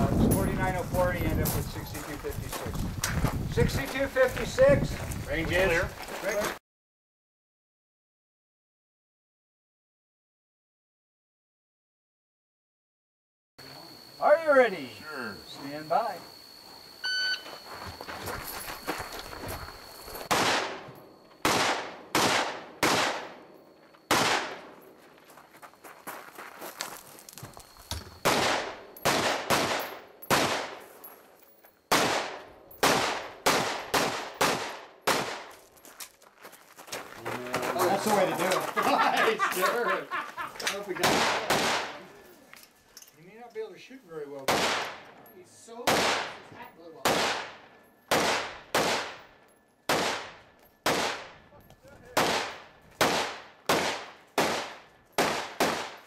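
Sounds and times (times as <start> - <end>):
rifle shots with echo: 20.3 - 23.5, 24.1 - 24.8, 28.2 - 30.8, 31.9 - 35.5, 41.0 - 42.0, 44.5 - 45.1, 45.8 - 49.3, 49.9 - 51.4, 52.1 - 56.0.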